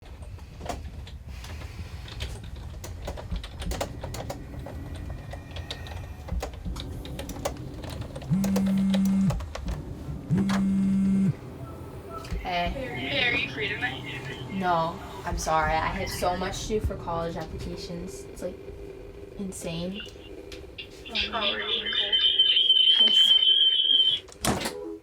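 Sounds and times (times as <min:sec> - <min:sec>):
keyboard typing: 0:02.0 - 0:11.3
phone buzzing: 0:08.3 - 0:09.4, 0:10.3 - 0:12.5, 0:20.8 - 0:24.3.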